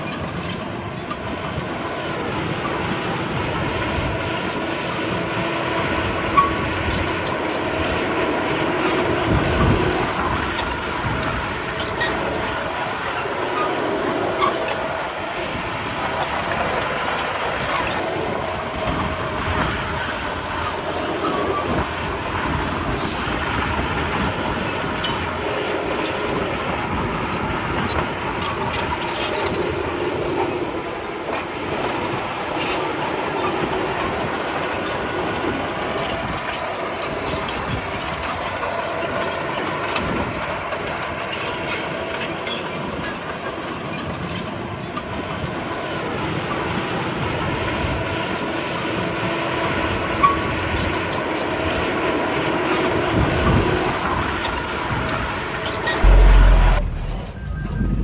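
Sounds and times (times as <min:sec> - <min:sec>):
bulldozer diesel engine droning: 0:00.0 - 0:58.0
steel tracks clanking: 0:00.0 - 0:58.0
sharp knock: 0:56.0 - 0:58.0.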